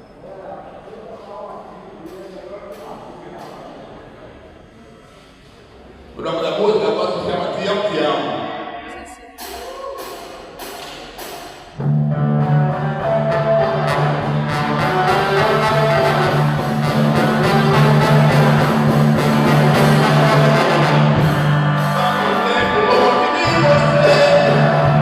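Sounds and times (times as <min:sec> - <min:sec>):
live rock band playing: 0:09.4 - 0:25.0.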